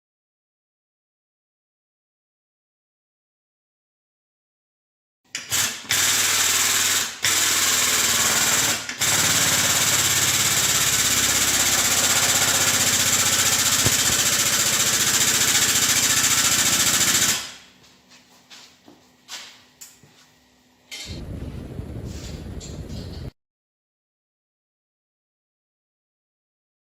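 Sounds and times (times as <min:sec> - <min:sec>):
power tool rattling and hammering: 0:05.3 - 0:17.7.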